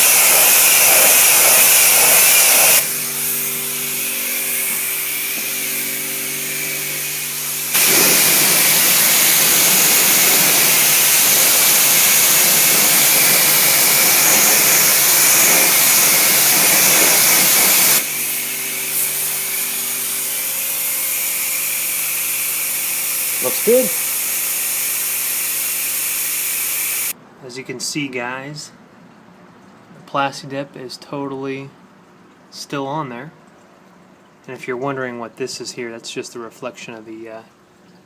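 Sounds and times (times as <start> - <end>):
high-pressure water spray hissing: 0.0 - 27.2
pressure washer humming: 0.0 - 27.2.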